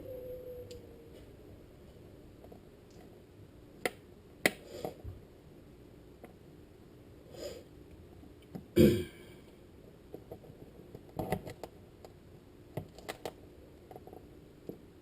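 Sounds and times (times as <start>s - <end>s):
person grunting: 8.8s - 9.3s.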